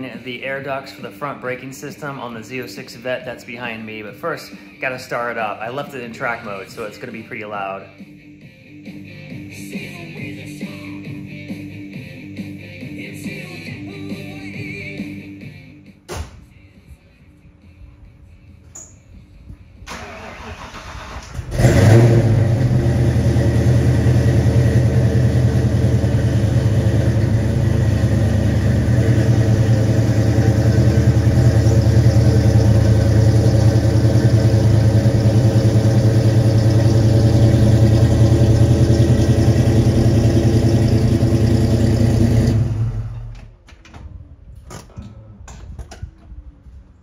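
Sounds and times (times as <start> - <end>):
car engine cranking and idling: 19.8 - 43.6.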